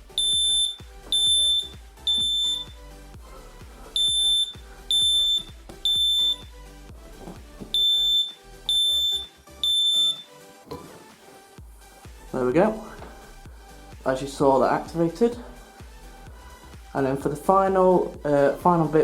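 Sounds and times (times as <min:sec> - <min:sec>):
smoke detector alarm beeps: 0:00.1 - 0:02.8, 0:04.0 - 0:06.5, 0:07.7 - 0:10.4.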